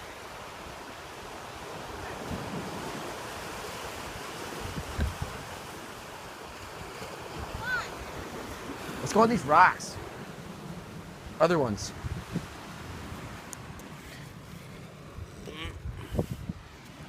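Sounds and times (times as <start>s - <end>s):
ocean surf washing on shore: 0.0s - 17.0s
wind buffeting microphone: 1.4s - 6.0s, 9.9s - 17.0s.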